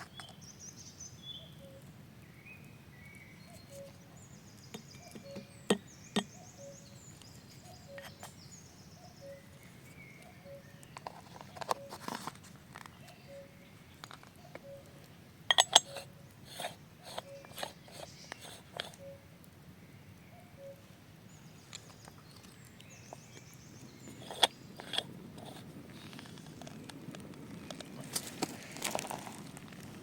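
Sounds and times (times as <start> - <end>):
faint high chirps: 2.6 - 10.9, 13.0 - 13.7, 14.4 - 16.3, 17.0 - 19.3, 20.0 - 20.9.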